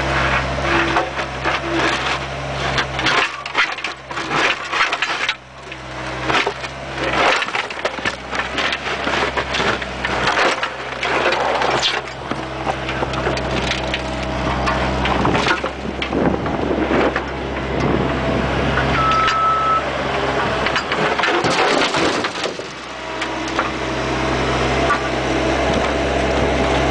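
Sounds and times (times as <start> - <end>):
diesel engine running: 0.0 - 26.9
excavator bucket scraping and clattering: 0.0 - 26.9.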